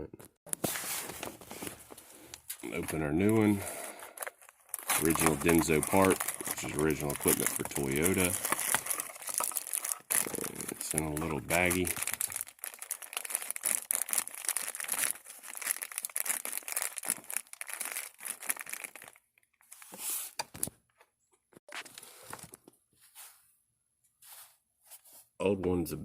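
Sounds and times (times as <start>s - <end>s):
plastic bag crinkling: 0.9s - 19.5s.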